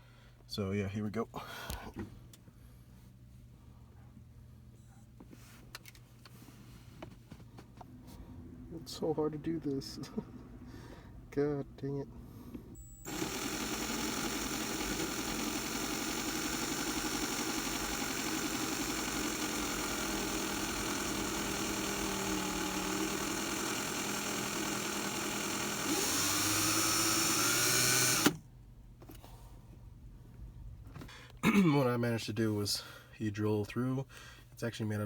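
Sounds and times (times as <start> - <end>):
electric drill boring into wood: 12.8 - 28.4.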